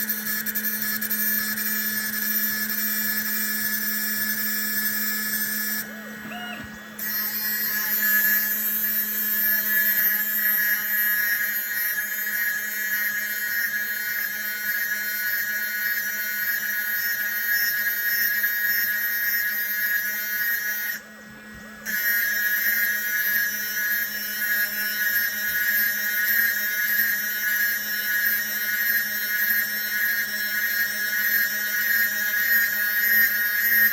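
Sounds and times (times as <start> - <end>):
cnc spindle whining: 0.0 - 33.9.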